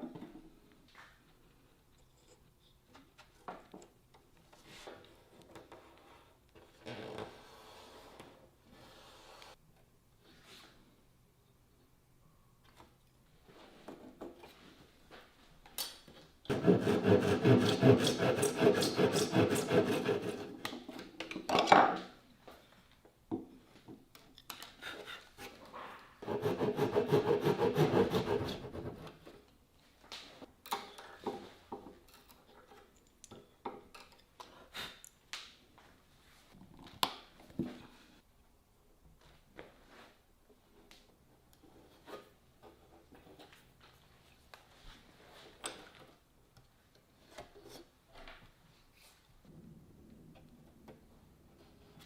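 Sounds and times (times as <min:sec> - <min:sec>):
hand tool rasping wood: 0:16.5 - 0:20.7, 0:26.2 - 0:28.9.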